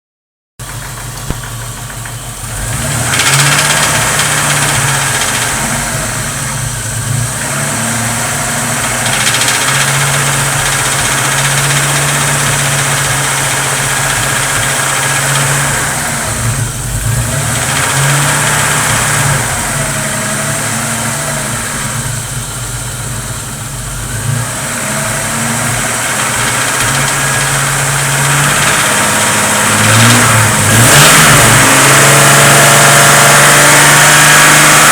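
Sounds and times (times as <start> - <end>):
car engine revving: 0.6 - 34.9.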